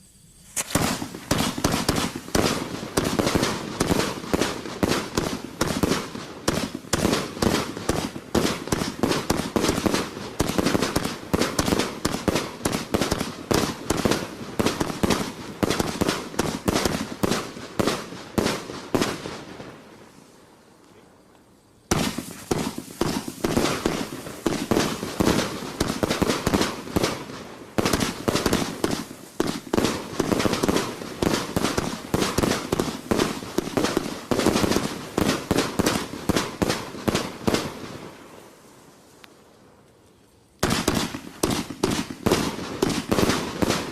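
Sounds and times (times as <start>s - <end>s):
firework cake firing shots: 0.4s - 19.5s, 21.9s - 38.0s, 40.6s - 43.9s.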